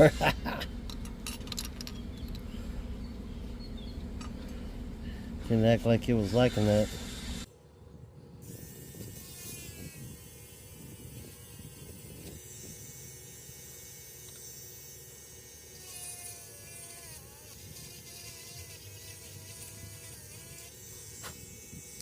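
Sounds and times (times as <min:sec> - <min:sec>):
faint electric buzz: 0:08.4 - 0:22.0.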